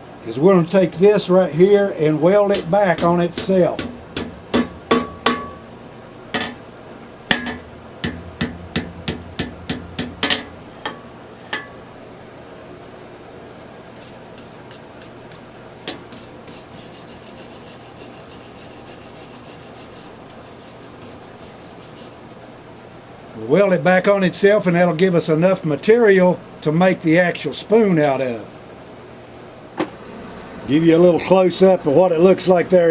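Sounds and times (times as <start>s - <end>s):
steady low hum: 0.0s - 32.9s
hammer striking metal on anvil: 2.5s - 5.7s, 6.4s - 6.6s, 7.3s - 11.8s.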